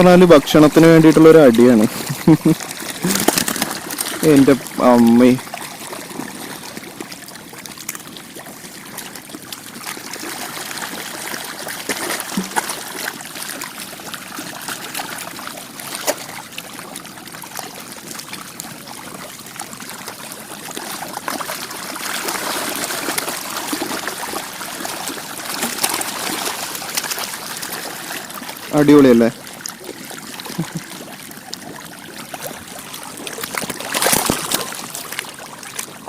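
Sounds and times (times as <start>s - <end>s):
water splashing and sloshing: 0.0s - 36.0s
fish thrashing at surface: 1.6s - 5.2s, 10.2s - 13.1s, 33.2s - 35.3s.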